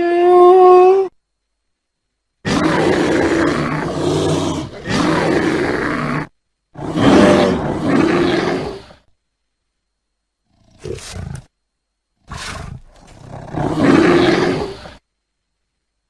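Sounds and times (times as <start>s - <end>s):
bear roaring: 2.5s - 9.0s, 10.5s - 11.5s, 12.2s - 15.0s.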